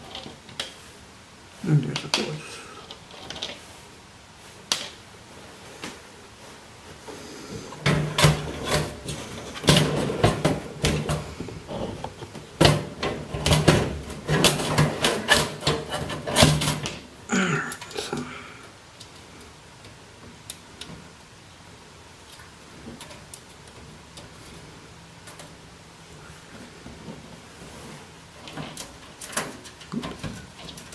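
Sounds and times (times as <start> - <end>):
scraping slide: 26.2 - 29.8.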